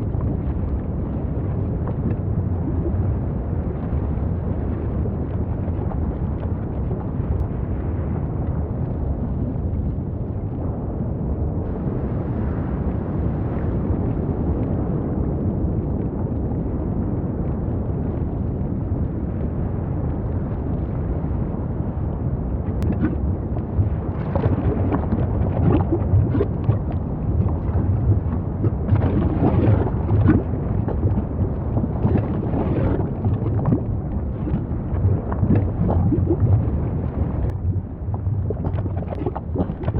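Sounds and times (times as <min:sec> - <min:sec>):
deep volcanic rumble: 0:00.0 - 0:39.9
crackling bursts: 0:22.8 - 0:39.9.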